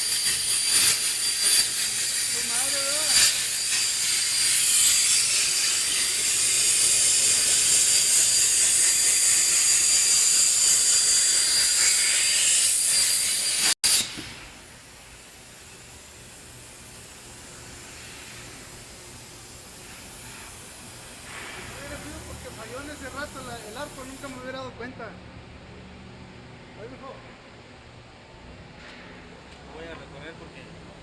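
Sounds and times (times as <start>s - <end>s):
plasma cutter hissing: 0.0s - 24.6s.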